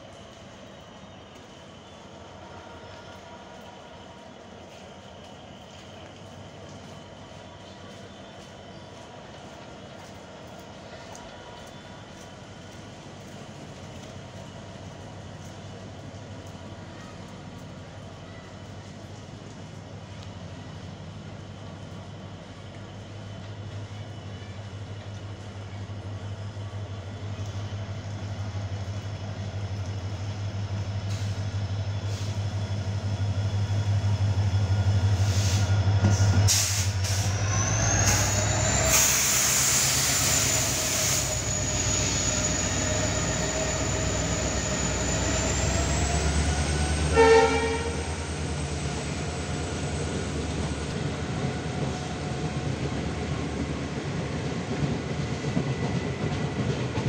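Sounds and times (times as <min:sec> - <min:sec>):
diesel locomotive engine drone: 0:00.0 - 0:57.0
hiss: 0:28.8 - 0:45.3
locomotive horn blast: 0:47.1 - 0:48.2.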